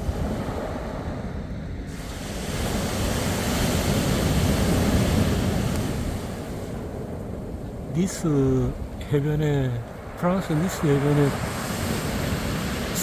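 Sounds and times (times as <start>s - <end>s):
waves breaking on beach: 0.0s - 13.0s
wind on microphone: 0.0s - 13.0s.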